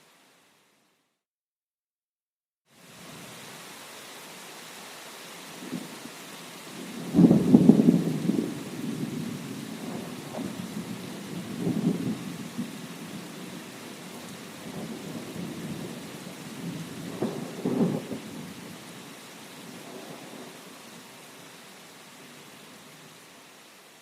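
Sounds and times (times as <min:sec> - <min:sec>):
steady rain: 0:00.0 - 0:00.8, 0:02.7 - 0:24.0
low thunder rumbling: 0:06.8 - 0:18.7.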